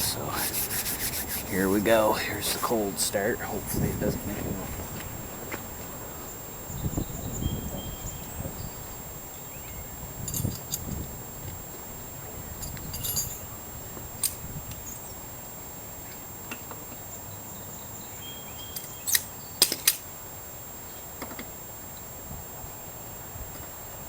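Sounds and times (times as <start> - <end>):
steady hiss: 0.0 - 16.4.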